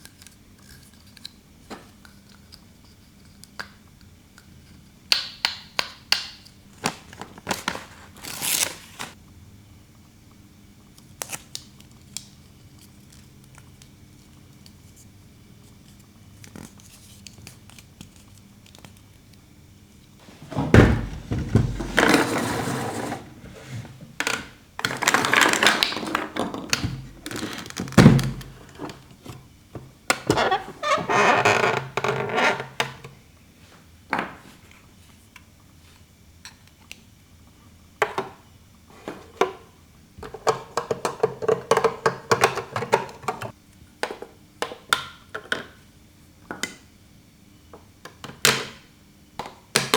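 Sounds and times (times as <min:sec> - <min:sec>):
plastic parts rustling and scraping: 0:06.8 - 0:09.2, 0:20.2 - 0:29.4
dull thunks: 0:20.4 - 0:22.0.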